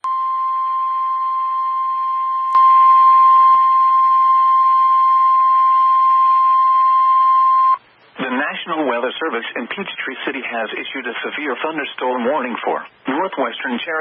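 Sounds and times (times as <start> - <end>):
weather radio warning alarm tone: 0.0 - 7.8.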